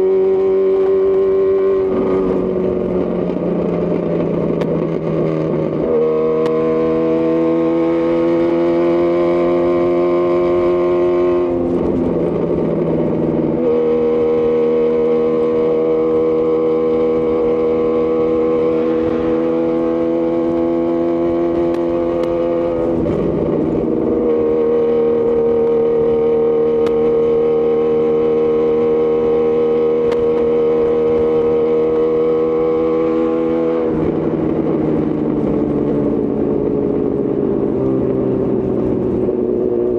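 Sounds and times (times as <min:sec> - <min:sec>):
motorcycle engine cruising: 0:00.0 - 0:39.9.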